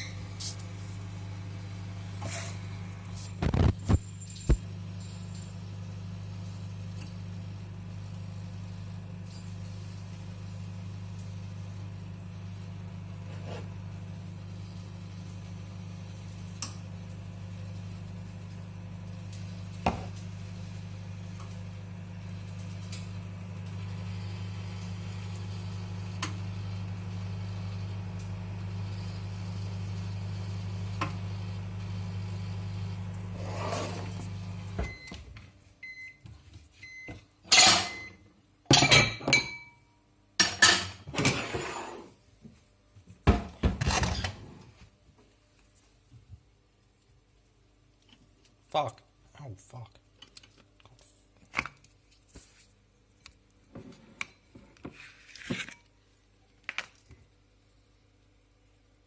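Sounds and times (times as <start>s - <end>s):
microwave oven humming: 0.0s - 41.8s.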